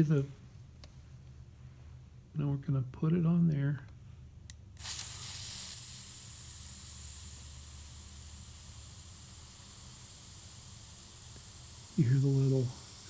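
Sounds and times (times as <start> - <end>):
butane gas hissing: 4.8 - 13.0.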